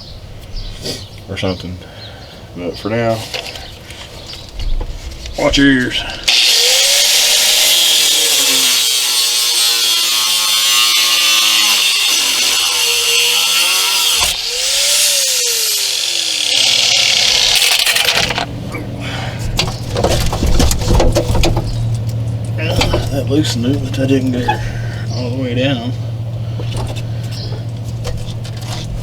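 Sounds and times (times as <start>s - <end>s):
angle grinder cutting steel: 6.3s - 18.5s
clattering knocks: 19.3s - 25.2s, 26.4s - 29.0s.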